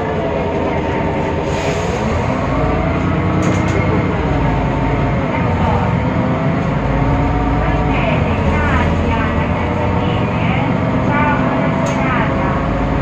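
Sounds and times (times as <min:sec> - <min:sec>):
bus engine whining: 0:00.0 - 0:13.0.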